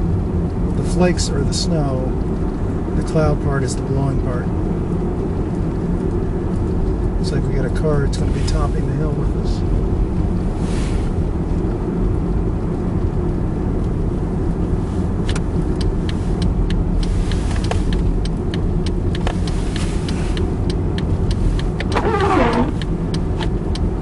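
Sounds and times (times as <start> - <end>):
car engine and road noise: 0.0 - 24.0
turn signal ticking: 11.6 - 24.0.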